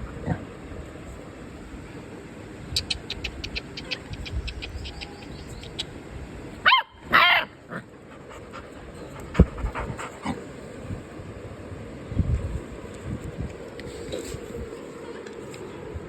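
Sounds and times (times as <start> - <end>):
dog barking high-pitched: 6.6 - 7.5.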